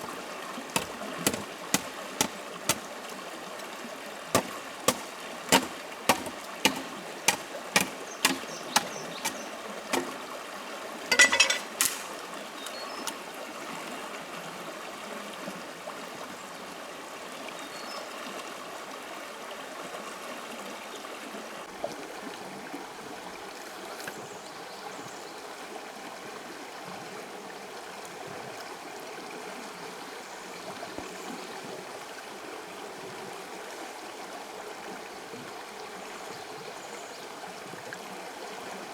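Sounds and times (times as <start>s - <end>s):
small stream running: 0.0s - 38.9s
sharp knocks: 0.8s - 2.9s, 4.4s - 10.2s, 11.1s - 12.2s
short clatter: 11.1s - 12.2s.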